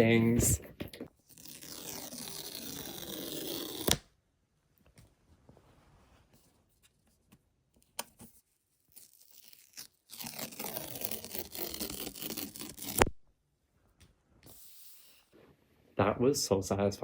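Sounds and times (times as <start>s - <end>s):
paper seal strip tearing: 1.3s - 4.0s, 8.9s - 13.2s
strip snapping free: 1.4s - 4.1s, 9.0s - 13.2s.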